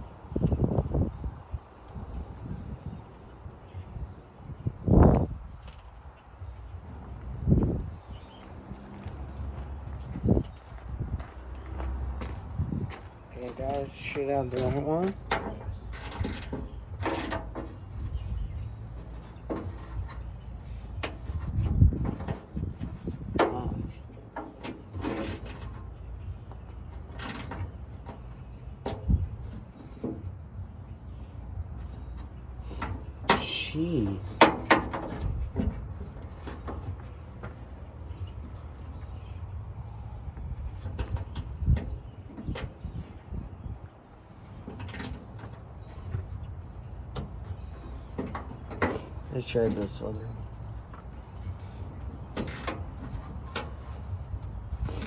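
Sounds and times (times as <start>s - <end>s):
low rumble of handling: 0.0s - 55.0s
wrench clicking on metal bolts: 15.2s - 17.8s, 24.4s - 25.9s, 27.1s - 29.1s, 52.3s - 53.8s
hand tool clicking on bolts: 15.3s - 17.7s.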